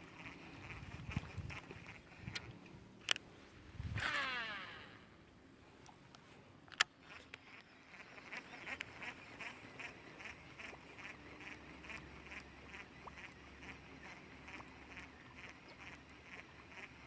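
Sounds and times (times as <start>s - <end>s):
fishing reel spool whine: 0.0s - 6.1s, 6.7s - 17.0s
fishing reel sharp click: 1.8s - 3.3s, 3.9s - 5.2s
fishing reel ticking: 4.0s - 5.2s, 6.7s - 17.0s.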